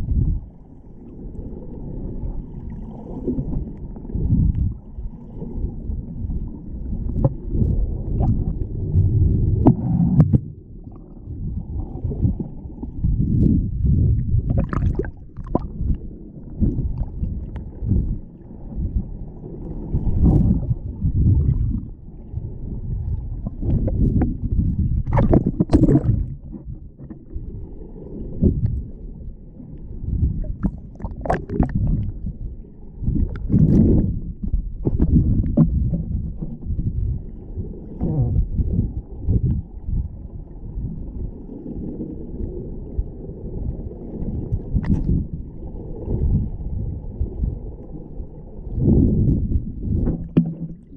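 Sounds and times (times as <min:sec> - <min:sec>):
muffled water rumbling and sloshing: 0:00.0 - 0:50.9
water splashes: 0:14.3 - 0:18.1, 0:23.0 - 0:28.8, 0:30.2 - 0:32.3, 0:48.8 - 0:50.9.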